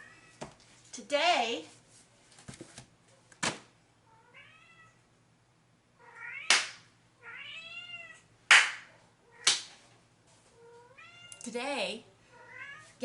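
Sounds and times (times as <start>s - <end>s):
cat meowing: 4.1s - 5.0s, 6.0s - 6.5s, 7.2s - 8.2s, 10.6s - 11.4s, 12.4s - 13.0s.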